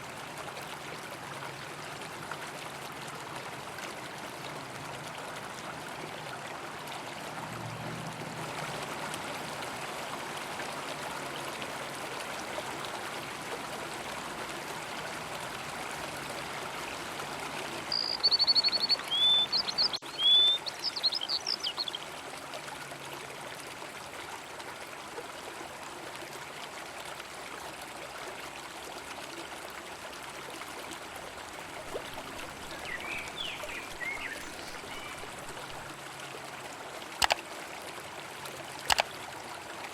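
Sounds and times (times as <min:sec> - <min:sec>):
river water flowing: 0:00.0 - 0:39.9
bird trilling and chirping: 0:17.9 - 0:22.0, 0:32.7 - 0:35.3.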